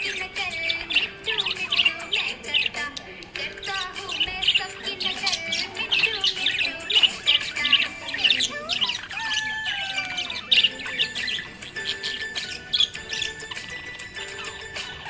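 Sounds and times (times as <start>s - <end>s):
budgerigars chirping and warbling: 0.0s - 15.0s.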